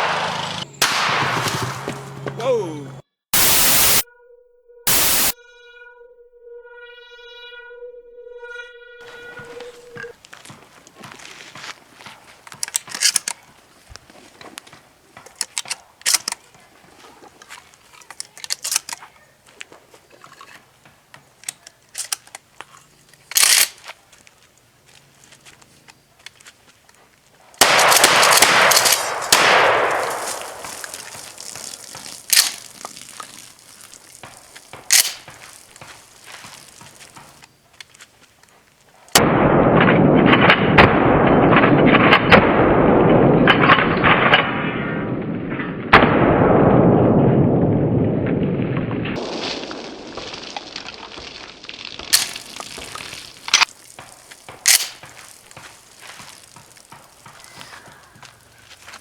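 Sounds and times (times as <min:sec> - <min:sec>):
shotgun shots: 0:00.0 - 0:02.4, 0:03.4 - 0:04.0, 0:04.9 - 0:05.4, 0:27.6 - 0:32.8, 0:33.4 - 0:37.2, 0:54.4 - 0:57.5
gun action clicks and clacks: 0:12.5 - 0:13.4, 0:15.2 - 0:16.4, 0:18.1 - 0:19.0, 0:23.2 - 0:23.8, 0:27.6 - 0:32.9, 0:34.2 - 0:35.4, 0:52.1 - 0:52.4, 0:53.5 - 0:55.7.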